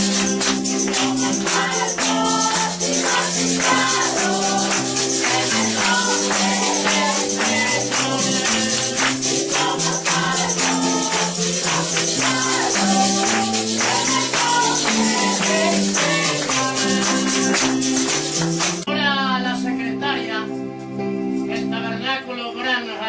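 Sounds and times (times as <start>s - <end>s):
voices singing: 0.0s - 18.1s
tambourine jingling: 0.0s - 18.9s
upbeat worship music: 0.0s - 23.0s.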